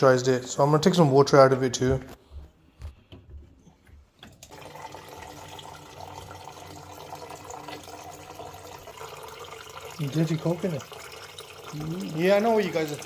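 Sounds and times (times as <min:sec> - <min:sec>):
water running from boiler: 0:04.2 - 0:13.0.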